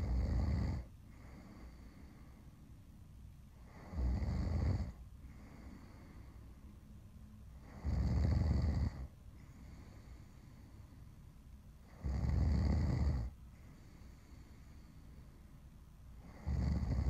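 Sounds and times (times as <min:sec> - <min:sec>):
woman snoring: 0:00.0 - 0:01.8, 0:03.7 - 0:05.0, 0:07.6 - 0:09.1, 0:11.9 - 0:13.4, 0:16.2 - 0:17.0
quiet breathing: 0:00.0 - 0:17.0.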